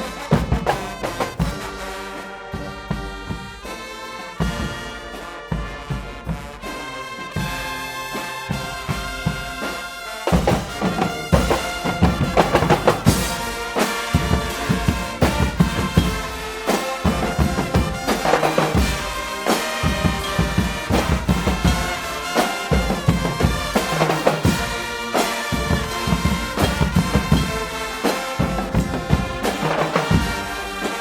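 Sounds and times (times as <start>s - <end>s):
brass band playing loudly: 0.0s - 31.0s
pounding drum beat: 0.0s - 31.0s.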